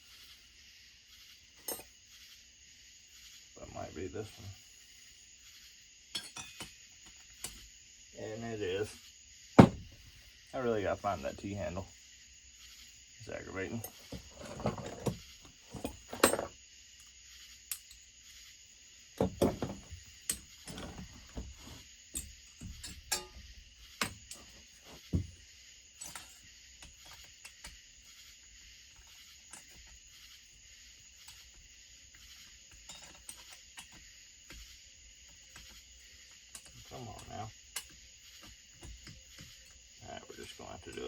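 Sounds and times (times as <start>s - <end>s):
steady high hiss: 0.0s - 41.0s
metal tools clinking on workbench: 1.6s - 1.9s, 6.1s - 6.8s, 13.8s - 16.5s, 19.2s - 21.4s, 22.1s - 23.4s, 26.0s - 27.8s, 32.7s - 34.0s.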